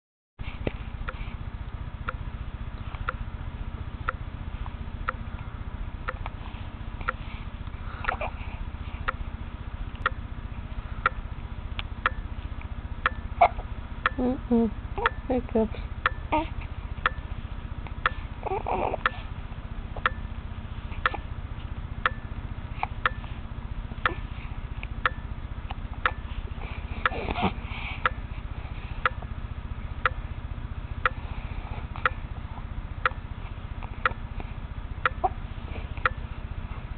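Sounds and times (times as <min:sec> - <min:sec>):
low background hum: 0:00.4 - 0:36.9
faint irregular clicks: 0:02.0 - 0:02.3, 0:04.0 - 0:05.5, 0:09.9 - 0:10.2, 0:20.0 - 0:20.3, 0:28.0 - 0:28.3, 0:29.0 - 0:29.3, 0:30.0 - 0:30.2, 0:32.0 - 0:32.2, 0:33.8 - 0:35.3, 0:36.0 - 0:36.3
clock ticking: 0:10.0 - 0:10.2, 0:11.0 - 0:11.2, 0:12.0 - 0:12.3, 0:13.0 - 0:13.4, 0:15.0 - 0:15.3, 0:16.0 - 0:16.3, 0:17.0 - 0:17.3, 0:18.0 - 0:18.2, 0:20.0 - 0:20.3, 0:22.0 - 0:22.3, 0:23.0 - 0:23.2, 0:25.0 - 0:25.2, 0:28.0 - 0:28.2, 0:29.0 - 0:29.2, 0:30.0 - 0:30.2, 0:33.0 - 0:33.2.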